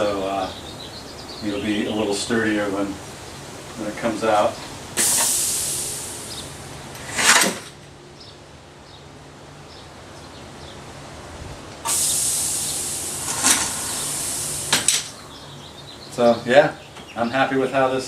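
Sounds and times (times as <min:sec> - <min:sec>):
compressed air hissing: 0:04.9 - 0:07.6, 0:11.8 - 0:17.0.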